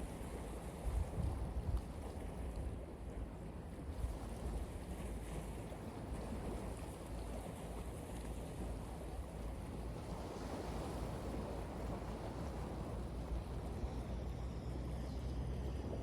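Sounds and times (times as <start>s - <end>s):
sea waves breaking on beach: 8.8s - 14.3s.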